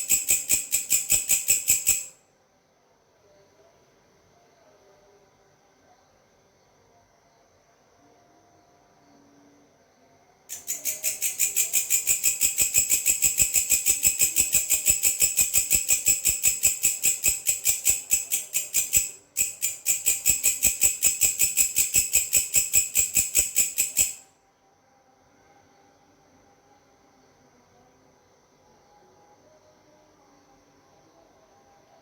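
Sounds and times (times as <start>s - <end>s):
grasshopper chirping: 0.0s - 2.2s, 10.5s - 24.2s.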